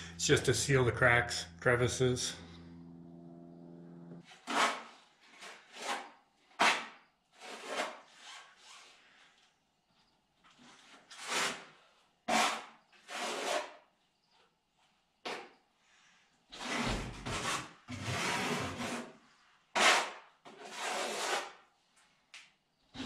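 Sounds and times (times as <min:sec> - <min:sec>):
trowel scraping mortar: 0:04.2 - 0:09.0, 0:12.3 - 0:13.8, 0:16.6 - 0:21.6.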